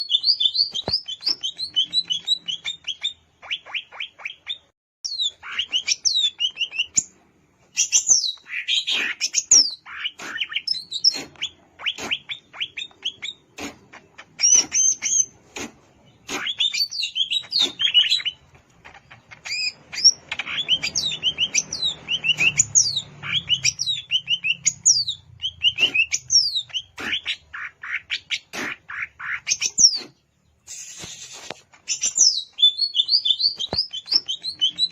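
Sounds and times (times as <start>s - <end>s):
bird singing whistles and chirps: 29.5s - 34.9s.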